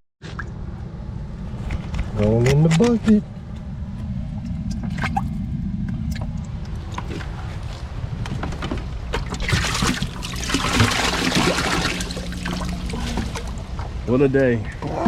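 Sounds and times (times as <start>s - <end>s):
water splashing and sloshing: 0.2s - 0.8s, 3.6s - 15.0s
steady low rumble: 0.2s - 15.0s.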